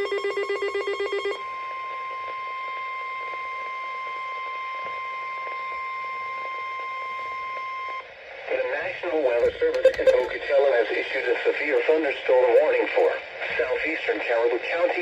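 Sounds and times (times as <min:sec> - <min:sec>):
electronic alarm trilling: 0:09.4 - 0:10.4
steady alert tone: 0:09.4 - 0:10.4.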